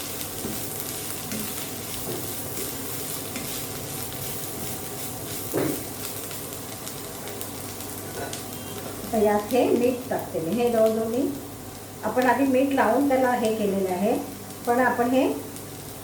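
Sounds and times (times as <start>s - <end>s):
vegetables sizzling in oil: 0.0s - 16.0s.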